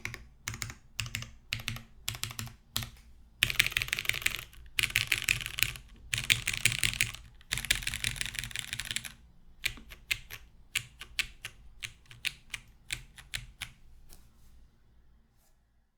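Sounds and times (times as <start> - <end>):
mechanical keyboard typing: 0.0 - 13.8.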